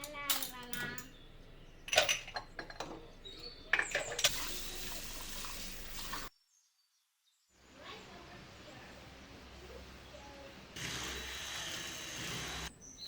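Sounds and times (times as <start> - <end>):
dishes and cutlery clinking: 1.9 - 4.5
kitchen tap running: 3.7 - 6.3.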